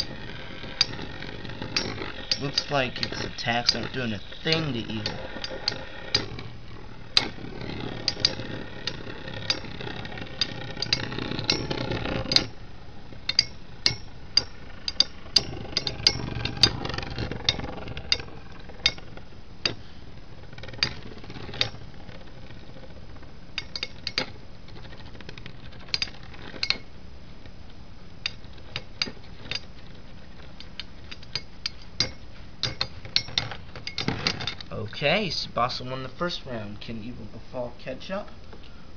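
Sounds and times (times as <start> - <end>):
spinning tops whirring: 0.0 - 27.0
sharp metallic clicks of clashing: 1.7 - 6.3, 13.3 - 16.8, 30.6 - 34.7.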